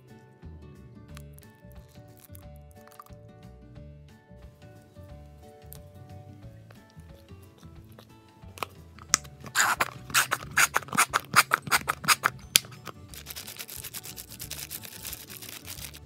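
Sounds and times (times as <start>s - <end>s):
faint music: 0.0s - 16.0s
sharp snips or clicks: 7.9s - 16.0s.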